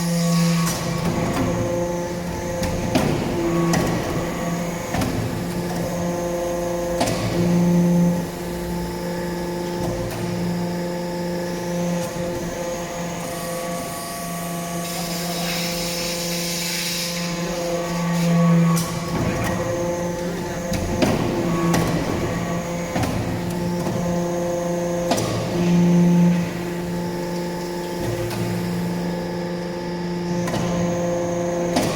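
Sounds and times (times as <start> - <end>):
hydraulic press humming: 0.0 - 31.9.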